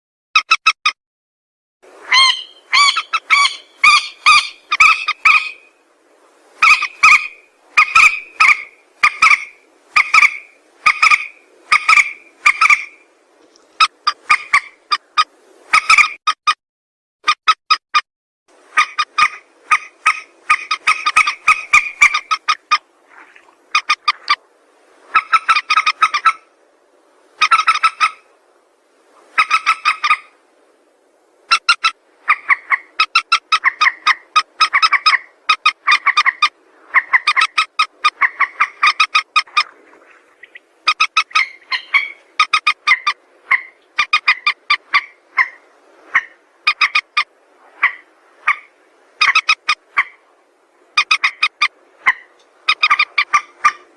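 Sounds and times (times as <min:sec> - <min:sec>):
rail bird calling: 0:02.0 - 0:05.8, 0:06.6 - 0:13.0, 0:13.8 - 0:16.2, 0:18.7 - 0:24.4, 0:25.0 - 0:26.5, 0:27.3 - 0:28.3, 0:29.2 - 0:30.4, 0:31.5 - 0:50.2, 0:50.9 - 0:53.9.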